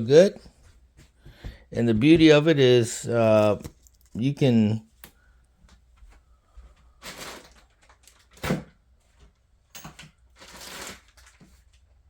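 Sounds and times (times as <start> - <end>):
velcro ripping: 10.4 - 11.3.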